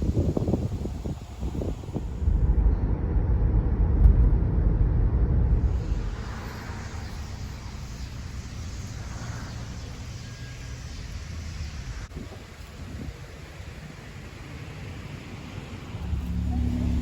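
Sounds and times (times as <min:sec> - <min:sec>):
low engine rumble: 0:00.0 - 0:17.0
steady low hum: 0:12.7 - 0:17.0.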